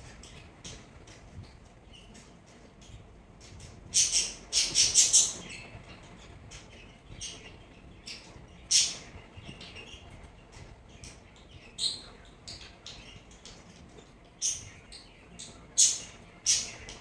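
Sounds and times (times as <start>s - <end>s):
small bird chirping: 11.3s - 13.5s, 14.4s - 17.0s.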